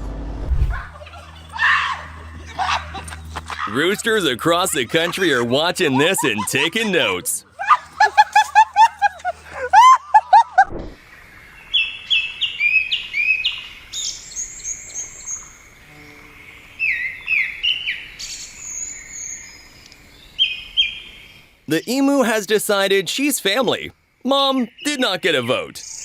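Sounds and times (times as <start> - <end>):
songbirds chirping: 11.1 - 26.0.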